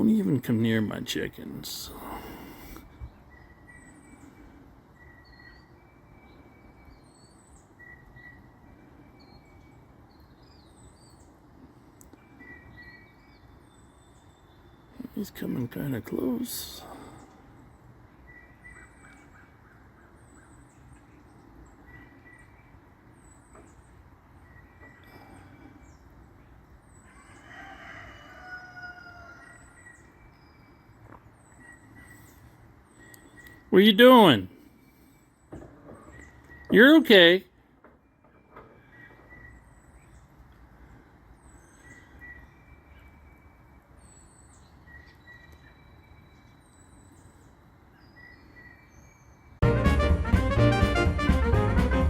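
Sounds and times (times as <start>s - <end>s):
small birds chirping: 0.0s - 49.6s
rooster crowing: 27.1s - 30.0s.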